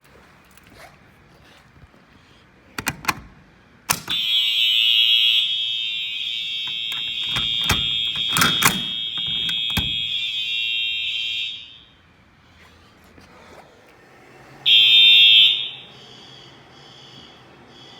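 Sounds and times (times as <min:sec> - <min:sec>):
sharp clicks: 0:03.9 - 0:04.3, 0:06.7 - 0:10.1
fire alarm horn tone: 0:03.9 - 0:12.2, 0:14.6 - 0:17.9.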